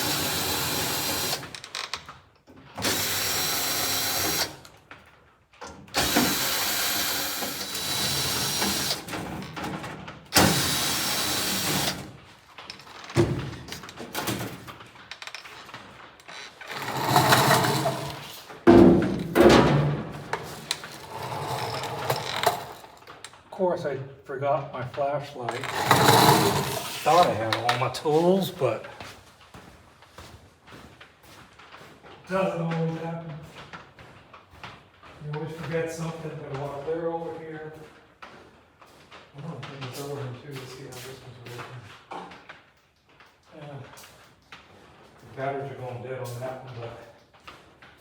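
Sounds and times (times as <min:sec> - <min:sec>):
power drill running: 0:00.0 - 0:02.0, 0:02.8 - 0:04.7, 0:06.0 - 0:09.6, 0:10.3 - 0:12.2, 0:16.4 - 0:18.5, 0:20.3 - 0:23.1, 0:25.5 - 0:28.0
parts knocking and rattling: 0:00.0 - 0:23.5, 0:25.0 - 0:29.0.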